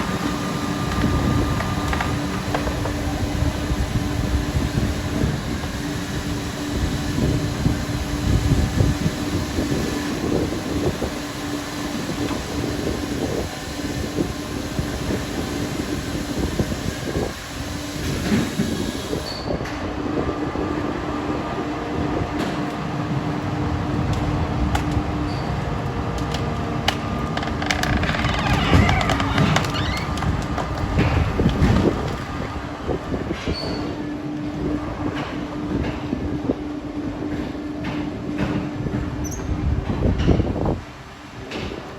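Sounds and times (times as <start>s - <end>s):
heavy machinery drone: 0.0s - 14.9s.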